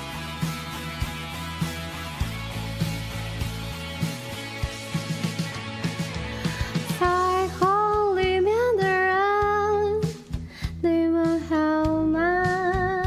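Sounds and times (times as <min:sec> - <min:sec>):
steady beat: 0:00.0 - 0:07.3
guitar: 0:00.0 - 0:13.0
person singing: 0:06.4 - 0:13.0.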